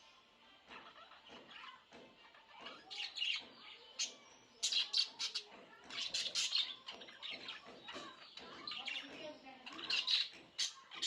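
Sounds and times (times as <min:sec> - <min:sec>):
budgerigars chirping: 0:02.7 - 0:11.0.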